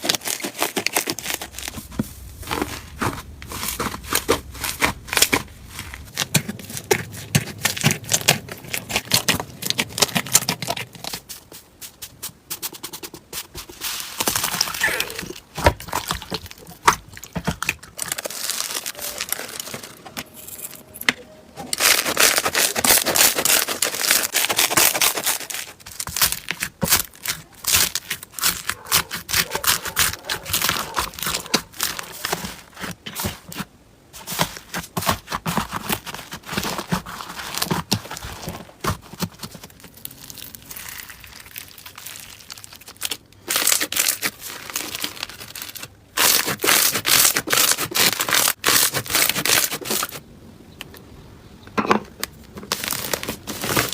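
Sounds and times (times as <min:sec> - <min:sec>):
slime crackling and popping: 0:00.0 - 0:11.2, 0:14.1 - 0:19.9, 0:21.8 - 0:33.2, 0:35.0 - 0:50.2.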